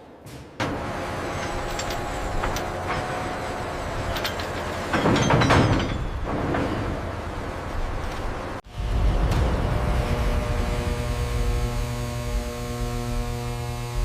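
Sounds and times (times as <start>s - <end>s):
metallic clanks and rattles: 0.3s - 7.2s
heavy machinery rumbling: 0.6s - 13.9s.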